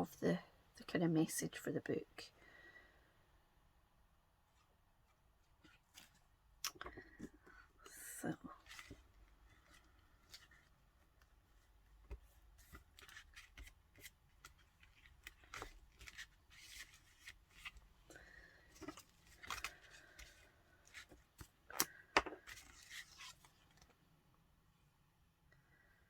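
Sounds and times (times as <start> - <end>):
paper rustling: 11.5 - 17.9, 18.6 - 24.0.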